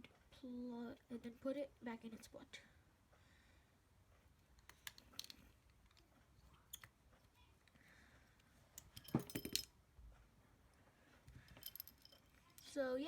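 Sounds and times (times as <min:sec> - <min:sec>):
metal part clinking on hard surface: 0:08.8 - 0:09.7, 0:11.5 - 0:12.3.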